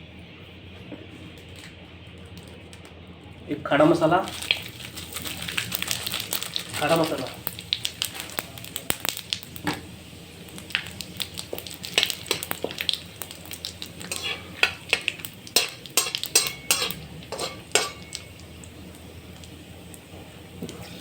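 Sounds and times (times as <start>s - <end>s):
spices sizzling in hot oil: 4.2s - 21.0s
metal spoon scraping and clinking pan: 14.0s - 18.5s.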